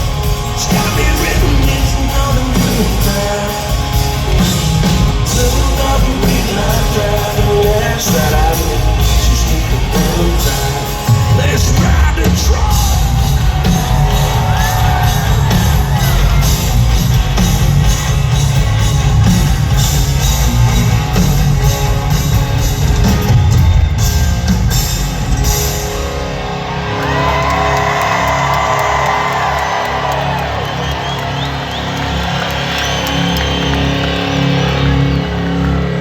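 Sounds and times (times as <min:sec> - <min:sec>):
drum kit with crashing cymbals: 0:00.0 - 0:26.5
electric guitar: 0:00.0 - 0:36.0
steady bass: 0:00.0 - 0:36.0.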